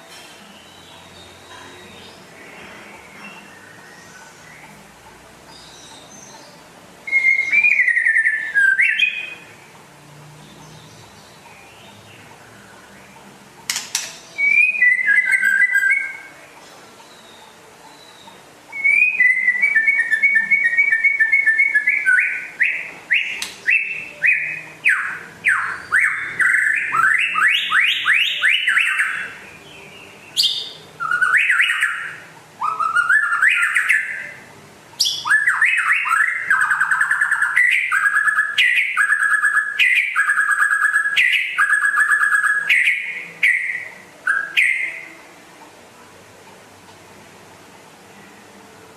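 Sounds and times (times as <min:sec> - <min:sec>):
bird singing varied phrases: 0:03.1 - 0:09.7, 0:14.3 - 0:16.4, 0:17.0 - 0:45.2.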